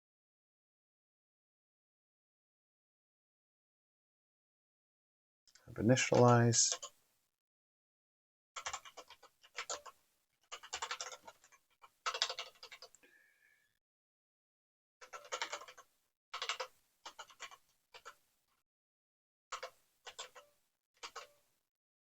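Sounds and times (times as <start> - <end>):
keyboard typing: 5.9 - 7.0, 8.6 - 13.0, 15.0 - 18.2, 19.5 - 21.4.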